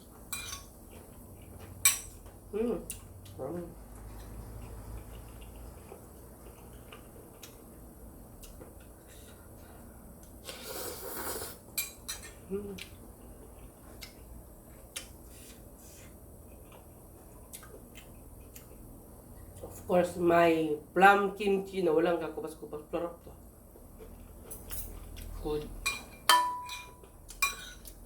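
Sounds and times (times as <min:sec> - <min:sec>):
utensils clinking against bowl: 0:00.3 - 0:00.7, 0:25.8 - 0:28.0
noodle slurp: 0:10.4 - 0:11.6.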